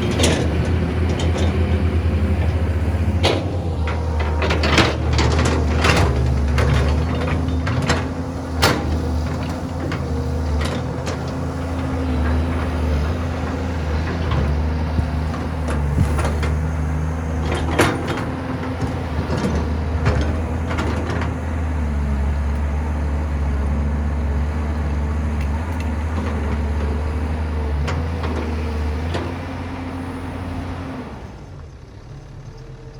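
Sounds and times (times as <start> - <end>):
sharp knocks and clanks: 0.0 - 21.6
diesel engine of heavy machinery: 0.0 - 32.9.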